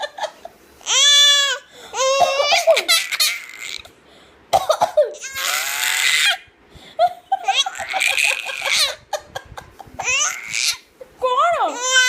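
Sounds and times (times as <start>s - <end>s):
baby laughing in squeals: 0.8s - 3.9s, 5.2s - 6.5s, 7.3s - 10.9s.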